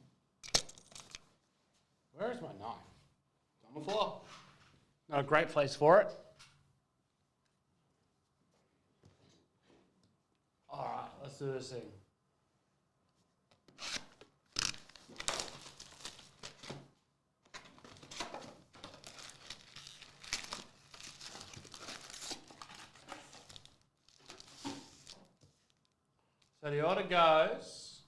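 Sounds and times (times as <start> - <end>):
plastic wrapping crinkling and tearing: 0.4 - 1.2, 14.6 - 16.8, 17.8 - 25.9.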